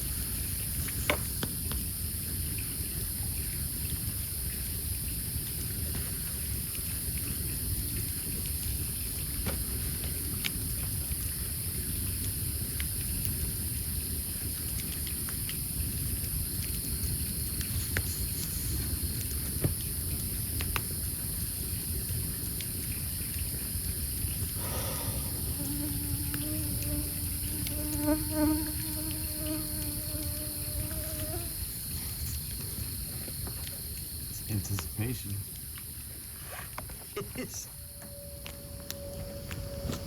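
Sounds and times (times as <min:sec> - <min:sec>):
campfire crackling: 0:00.0 - 0:40.0
insect drone: 0:00.0 - 0:40.0
fly buzzing: 0:24.6 - 0:32.3, 0:37.3 - 0:40.0.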